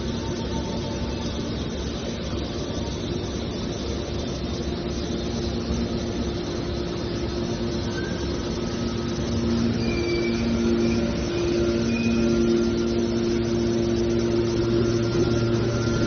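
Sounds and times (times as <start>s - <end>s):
baler machinery drone: 0.0s - 16.0s
faint short squeaks: 7.9s - 8.3s, 9.8s - 12.4s
low two-note hum: 7.9s - 16.0s.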